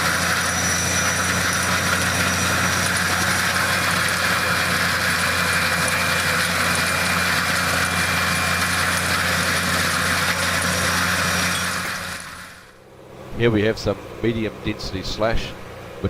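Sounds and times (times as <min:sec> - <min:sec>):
stump grinder running: 0:00.0 - 0:16.0.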